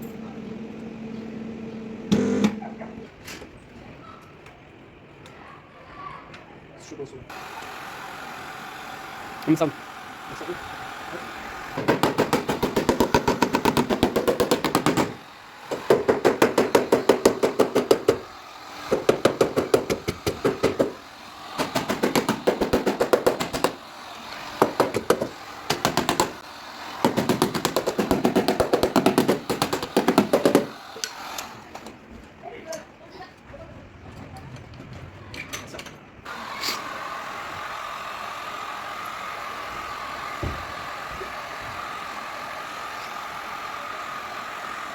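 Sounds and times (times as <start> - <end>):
rapid tapping on sheet metal: 11.8 - 18.2, 18.9 - 21.0, 21.6 - 23.8, 24.6 - 26.4, 27.0 - 30.7.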